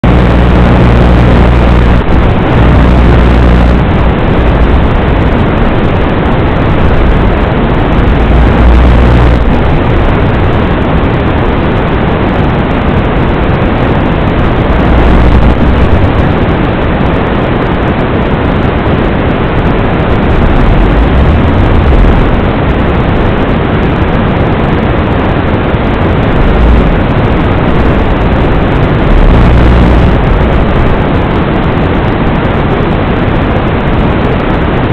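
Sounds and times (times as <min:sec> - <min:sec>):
low hum: 0:00.0 - 0:34.8
quadcopter rushing noise: 0:20.1 - 0:23.1.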